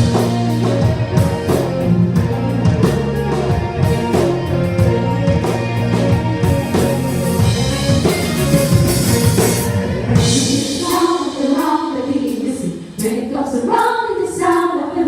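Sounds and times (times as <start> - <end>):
live band playing gospel: 0.0 - 14.6
people singing: 10.2 - 15.0.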